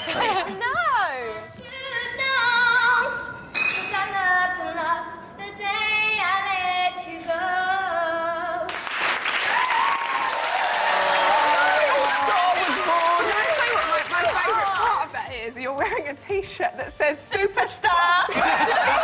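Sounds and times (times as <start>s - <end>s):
girl singing: 0.7s - 8.7s, 17.3s - 18.4s
audience noise: 9.1s - 15.2s.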